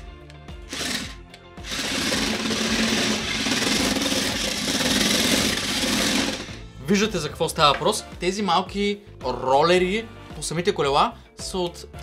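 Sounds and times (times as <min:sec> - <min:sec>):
electric motors whining: 0:00.7 - 0:06.7.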